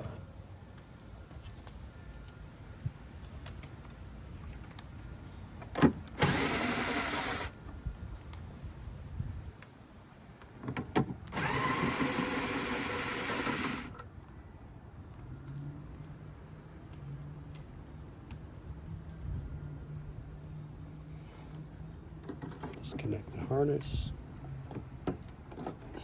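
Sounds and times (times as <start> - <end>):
power drill running: 6.2 - 7.5, 11.3 - 13.9.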